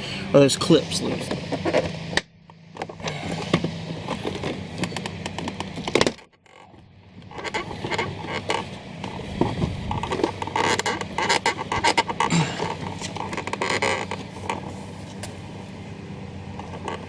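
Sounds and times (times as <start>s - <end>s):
plastic panel creaking: 2.8s - 14.8s, 16.6s - 17.0s.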